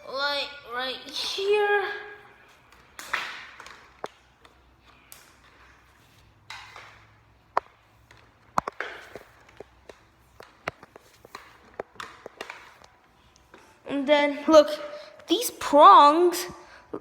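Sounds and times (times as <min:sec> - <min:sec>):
handling clicks and taps: 0:07.5 - 0:13.6.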